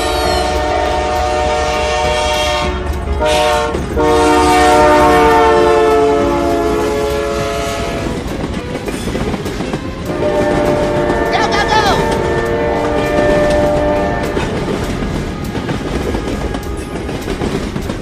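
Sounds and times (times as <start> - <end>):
train horn chord: 0.0 - 8.6, 9.2 - 18.0.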